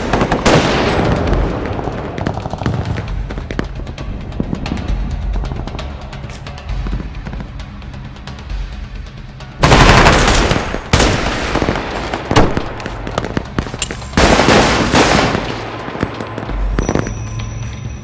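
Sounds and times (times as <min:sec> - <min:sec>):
automatic gunfire bursts: 0:09.6 - 0:13.0, 0:14.2 - 0:16.2
single gunshots: 0:09.6 - 0:16.5.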